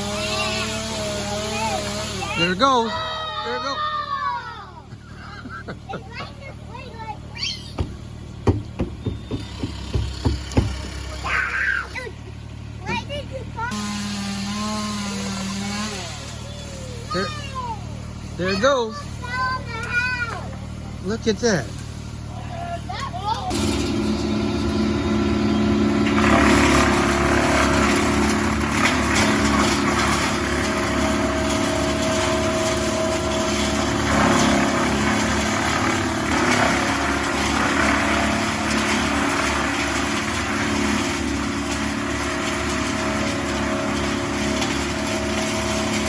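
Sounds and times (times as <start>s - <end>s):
engine running: 0.0s - 46.0s.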